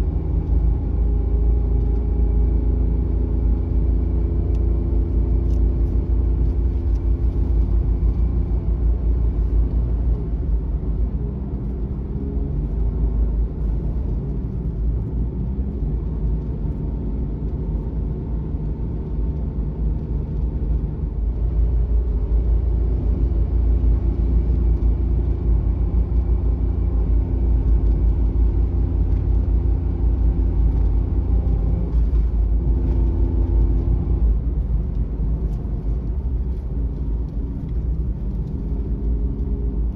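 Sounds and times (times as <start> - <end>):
road noise inside vehicle: 0.0 - 39.9
van engine rumbling: 0.0 - 39.9.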